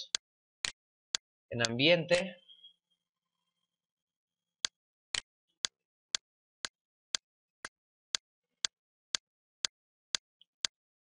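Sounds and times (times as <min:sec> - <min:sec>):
sharp evenly spaced ticks: 0:00.0 - 0:02.2, 0:04.6 - 0:10.8.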